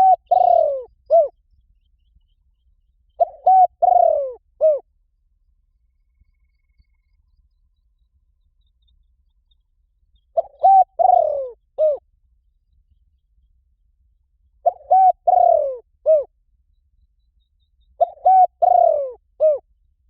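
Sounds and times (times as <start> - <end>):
dove cooing: 0.0 - 1.3, 3.2 - 4.9, 10.3 - 12.0, 14.6 - 16.3, 18.0 - 19.7.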